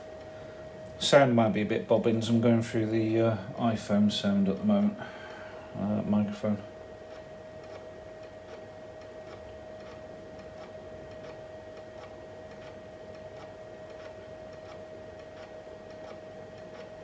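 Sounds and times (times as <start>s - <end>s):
hard drive clicking: 7.0s - 17.0s.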